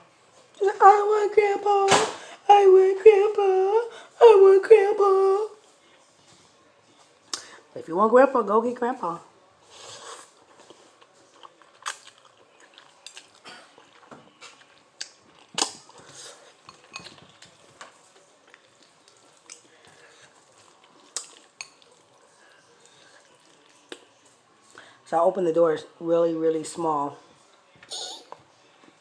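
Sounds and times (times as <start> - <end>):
faint chewing: 9.6 - 25.0.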